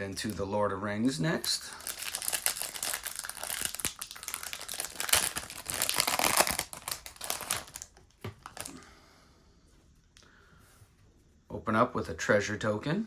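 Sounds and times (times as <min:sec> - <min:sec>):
foil wrapper tearing and crinkling: 0:01.7 - 0:08.8.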